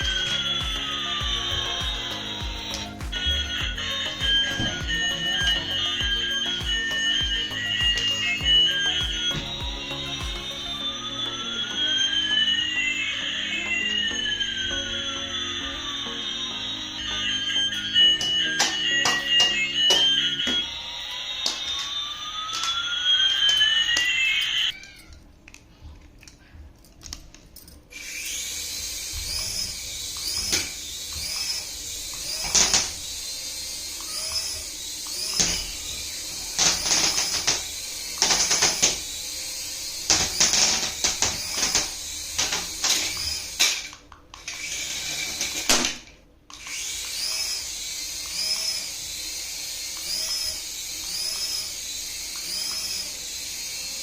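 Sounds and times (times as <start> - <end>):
electronic rising and falling tones: 0.0 - 24.8, 28.0 - 43.7
electric toy motor whining: 0.0 - 25.2, 27.9 - 54.0.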